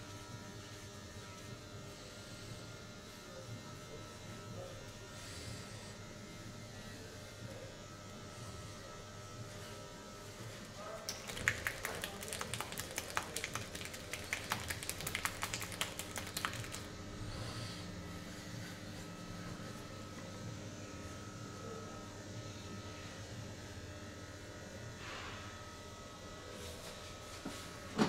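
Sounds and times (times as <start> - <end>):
faint steady hum: 0.0 - 27.8
rapid sharp taps: 11.1 - 16.9.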